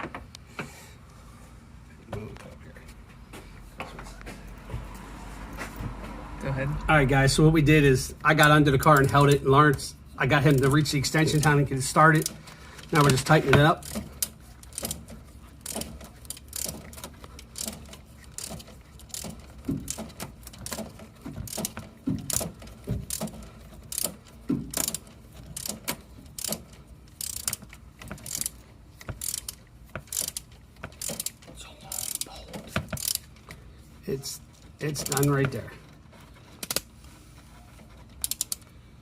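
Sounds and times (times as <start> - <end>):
socket ratchet clicking: 11.4 - 33.3, 38.2 - 38.7.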